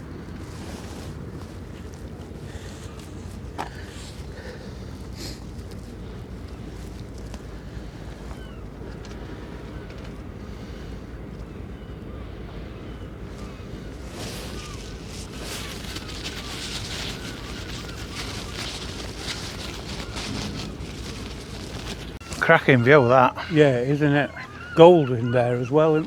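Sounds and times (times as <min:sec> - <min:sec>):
wind rumbling on microphone: 0:00.0 - 0:22.9
hissing crackling wash: 0:13.2 - 0:24.8.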